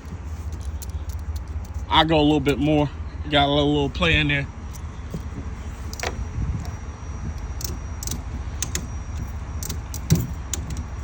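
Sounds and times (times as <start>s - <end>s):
ratchet strap clicking: 7.6s - 10.9s.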